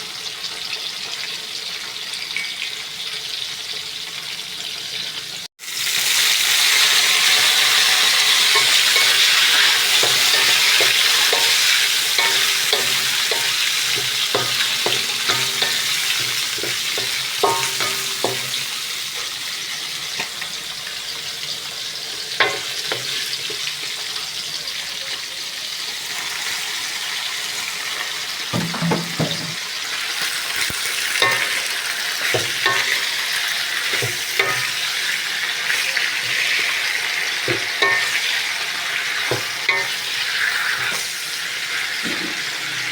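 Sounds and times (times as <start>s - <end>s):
food sizzling in hot oil: 0.0s - 42.9s
spatula scraping a pan: 6.5s - 20.5s, 30.4s - 42.9s.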